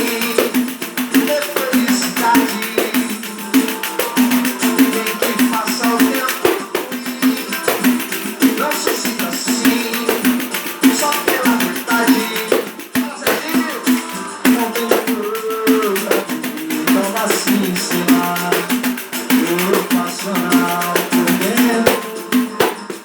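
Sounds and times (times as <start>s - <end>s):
melodic line: 0.0s - 13.2s
tambourine shaking and striking: 0.0s - 23.0s.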